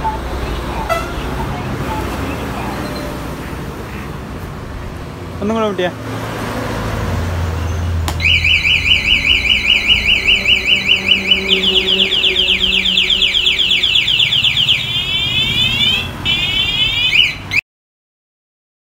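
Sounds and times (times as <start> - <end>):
motorcycle alarm siren: 0.0 - 3.4, 8.2 - 17.6.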